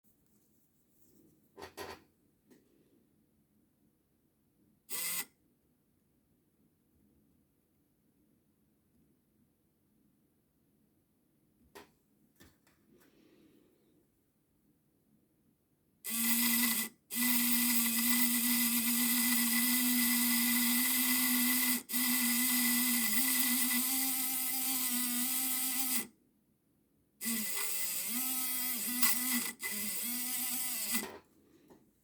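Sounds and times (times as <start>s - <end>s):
model train motor whining: 4.9s - 5.3s, 16.1s - 26.1s, 27.2s - 31.2s.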